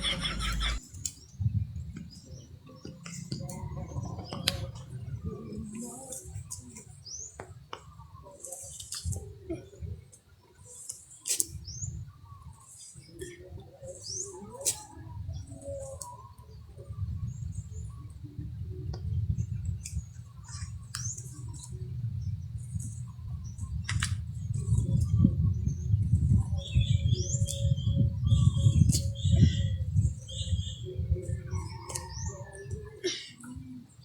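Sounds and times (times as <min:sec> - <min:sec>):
low rumbling noise: 0:00.0 - 0:00.8
birds chirping: 0:00.0 - 0:34.0.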